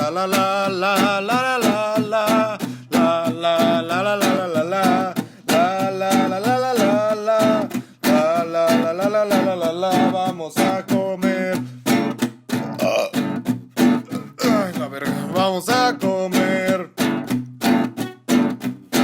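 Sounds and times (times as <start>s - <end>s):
strummed acoustic guitar: 0.0s - 19.0s.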